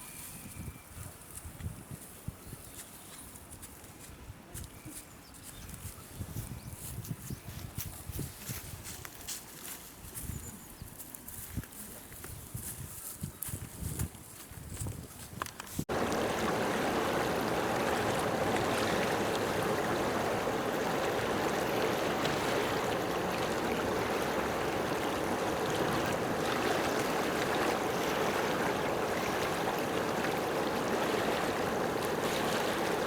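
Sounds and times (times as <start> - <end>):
running water rushing: 15.9 - 33.0.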